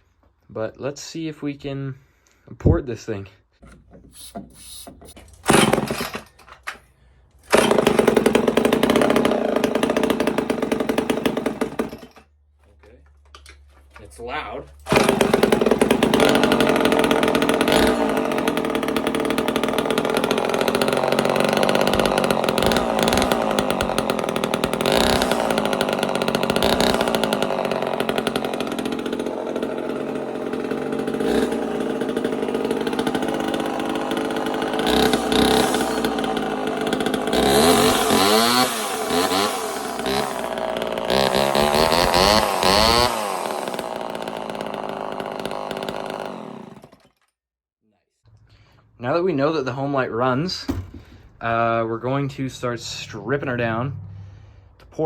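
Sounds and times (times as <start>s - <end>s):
chainsaw running and revving: 5.5s - 6.1s, 7.5s - 12.2s, 14.9s - 47.1s.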